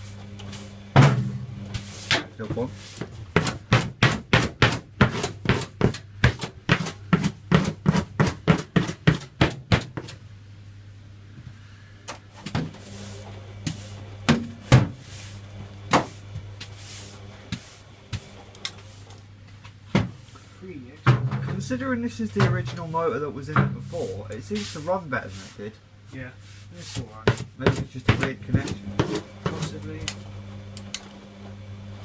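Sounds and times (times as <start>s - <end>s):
washing machine motor hum: 0.0s - 32.0s
washing machine knocking: 0.9s - 1.5s, 3.3s - 10.1s, 14.2s - 15.0s, 21.1s - 22.8s, 27.3s - 30.1s.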